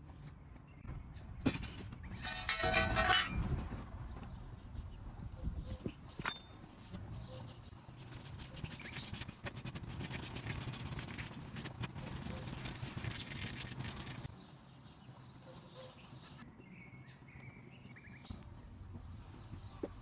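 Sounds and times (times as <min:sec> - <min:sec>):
rapid clicking and scraping: 0:01.5 - 0:03.8, 0:08.0 - 0:14.3.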